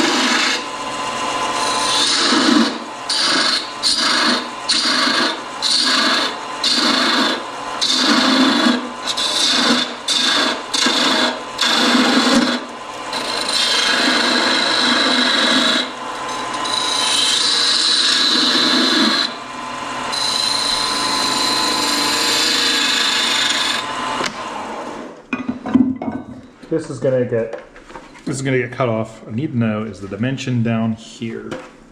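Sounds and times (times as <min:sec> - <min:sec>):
lathe tool cutting wood: 0:00.0 - 0:25.1.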